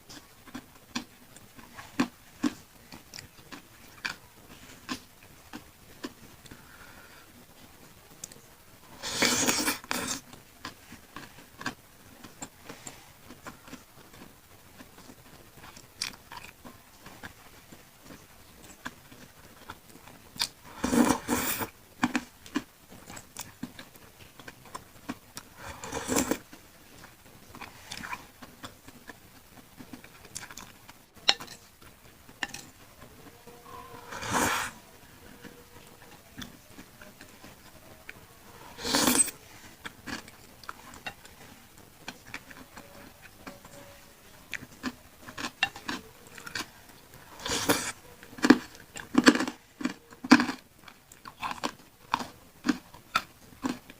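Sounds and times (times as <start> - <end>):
wet chewing: 44.5 - 53.9.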